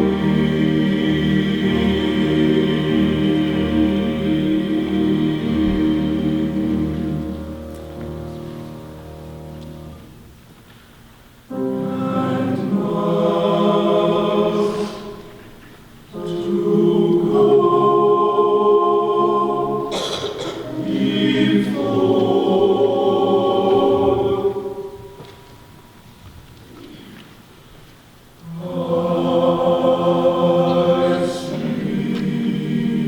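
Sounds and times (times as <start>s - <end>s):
men's chorus singing: 0.0s - 7.3s, 11.5s - 15.4s, 16.2s - 25.2s, 28.4s - 33.0s.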